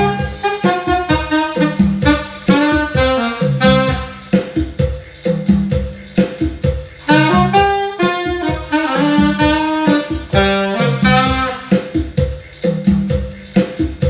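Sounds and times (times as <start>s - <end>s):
saxophone melody: 0.0s - 4.4s, 7.0s - 11.8s
steady percussion beat: 0.0s - 14.0s.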